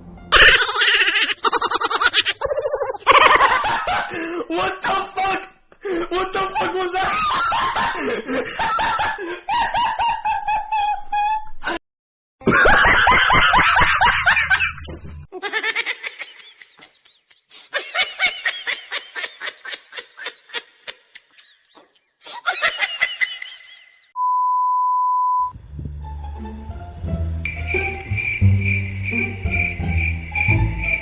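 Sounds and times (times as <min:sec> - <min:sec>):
high-pitched laughter: 0:00.3 - 0:04.2, 0:06.5 - 0:11.8, 0:12.4 - 0:24.2.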